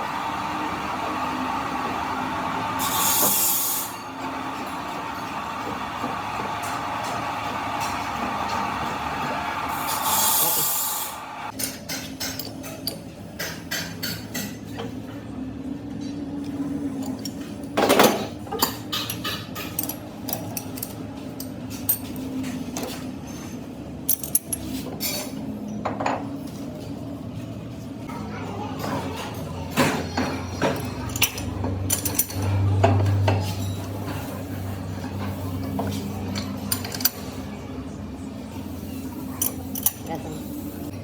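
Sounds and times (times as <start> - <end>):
machine running noisily: 0.0 - 11.5
metal clinks and knocks: 17.0 - 22.2, 30.6 - 32.6, 36.4 - 37.3, 39.4 - 40.2.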